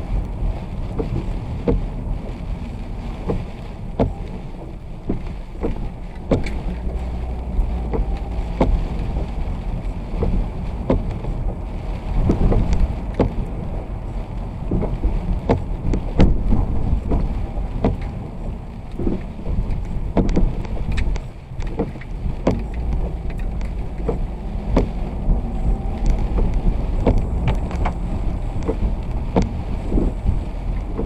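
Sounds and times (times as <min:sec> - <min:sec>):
vehicle road rumble in rain: 0:00.0 - 0:31.0
sharp taps and knocks: 0:01.0 - 0:01.9, 0:03.2 - 0:11.3, 0:12.2 - 0:13.5, 0:14.7 - 0:18.2, 0:18.9 - 0:28.0, 0:28.6 - 0:30.1.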